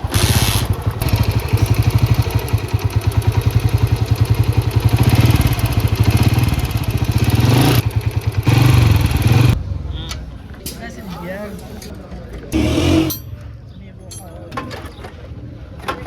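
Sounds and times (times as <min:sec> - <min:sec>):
motorcycle engine idling: 0:00.0 - 0:09.6.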